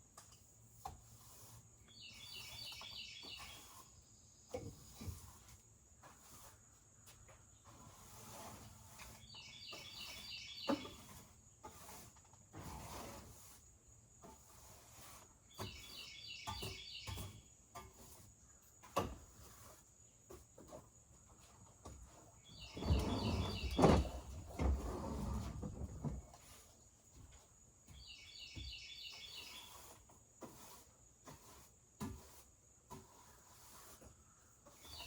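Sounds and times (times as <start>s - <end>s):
bird chirping: 1.9s - 3.8s, 9.2s - 11.0s, 15.5s - 17.5s, 22.4s - 24.3s, 28.0s - 29.8s
rustling and thumps: 21.9s - 28.0s.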